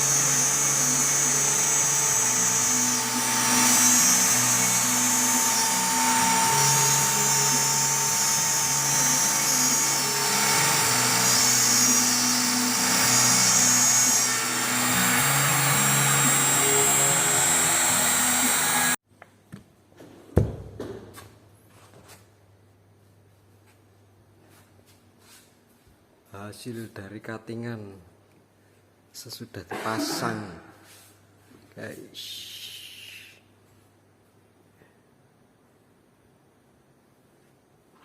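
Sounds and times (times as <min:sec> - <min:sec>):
cnc router whining: 0:00.0 - 0:19.0.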